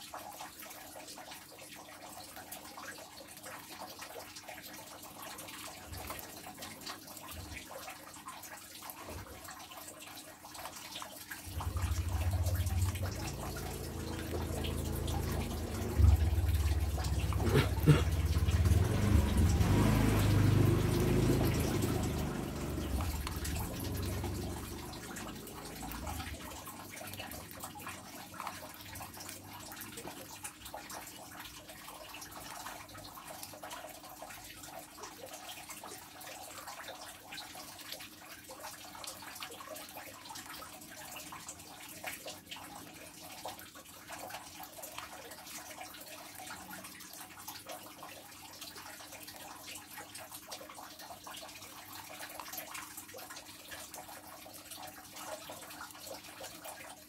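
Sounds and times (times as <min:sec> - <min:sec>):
water splashing: 0:01.0 - 0:57.0
faint steady hum: 0:09.1 - 0:34.3.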